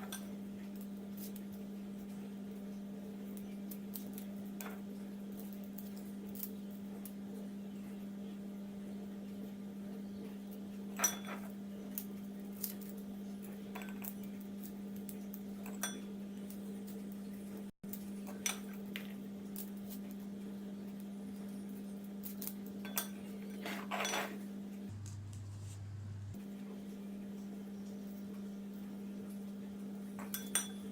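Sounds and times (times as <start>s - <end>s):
steady low hum: 24.4s - 30.9s.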